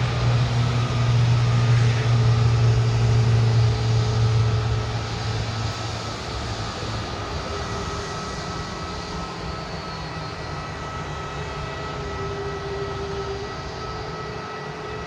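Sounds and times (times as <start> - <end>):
airliner engines running: 0.0 - 15.0.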